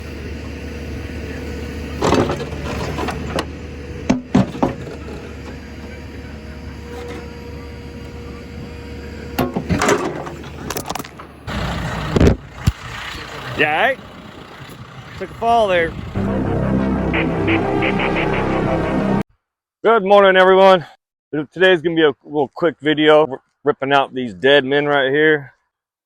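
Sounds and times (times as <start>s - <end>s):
diesel engine idling: 0.0s - 19.2s
knocks and clatters: 4.1s - 5.6s.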